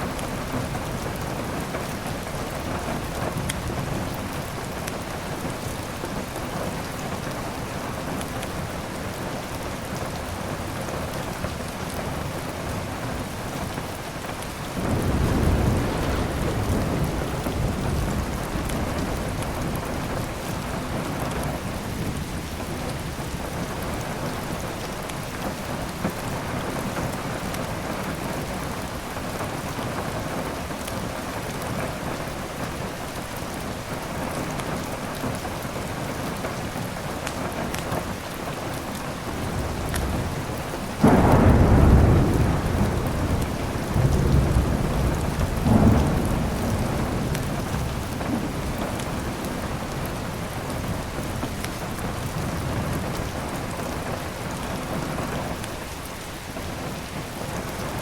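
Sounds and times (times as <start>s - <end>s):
heavy rain: 0.0s - 58.0s
thunder rumbling: 14.7s - 22.8s, 39.3s - 55.6s
loud thunderclap: 14.8s - 20.3s, 41.0s - 50.9s.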